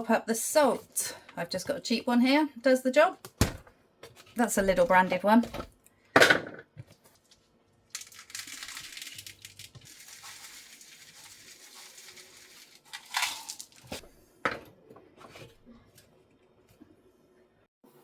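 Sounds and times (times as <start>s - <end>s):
salt pouring hiss: 9.9s - 12.9s.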